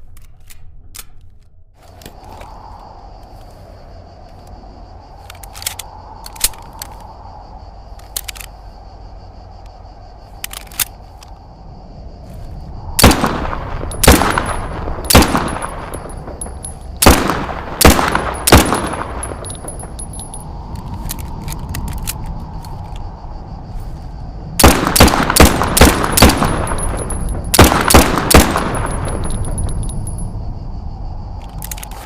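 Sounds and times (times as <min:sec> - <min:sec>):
pistol shots: 0:13.0 - 0:16.4, 0:17.0 - 0:19.7, 0:24.6 - 0:29.4.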